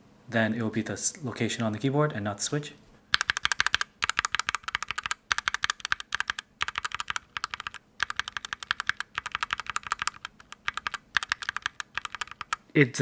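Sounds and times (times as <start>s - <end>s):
mechanical keyboard keys clacking: 3.1s - 12.6s.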